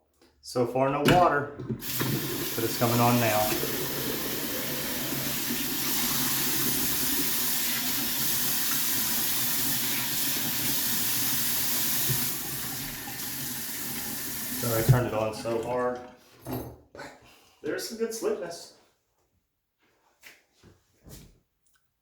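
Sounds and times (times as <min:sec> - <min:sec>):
tap water running into sink: 0:01.1 - 0:16.1.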